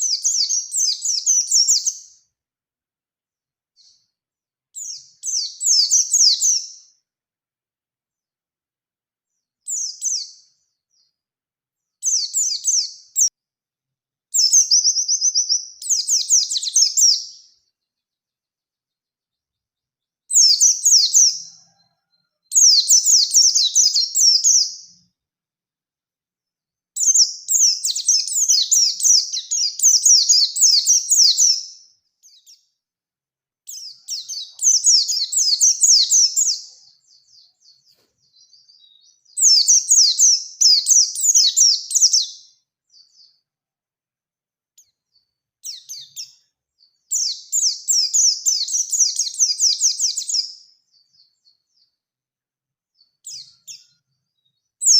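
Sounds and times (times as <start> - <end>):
bird singing rapid high twittering: 0.0 - 2.2, 14.4 - 17.4, 27.0 - 32.6, 33.7 - 43.4, 44.8 - 51.8.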